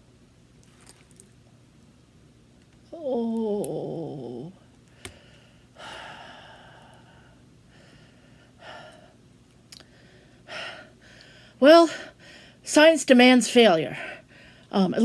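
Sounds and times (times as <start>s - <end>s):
person sighing: 2.9s - 5.2s.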